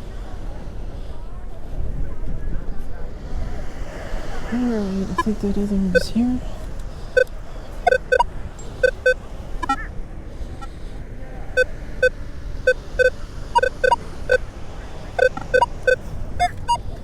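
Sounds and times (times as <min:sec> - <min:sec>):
metal detector beeps: 0:07.2 - 0:08.2, 0:08.8 - 0:09.9, 0:11.6 - 0:14.4, 0:15.2 - 0:16.9.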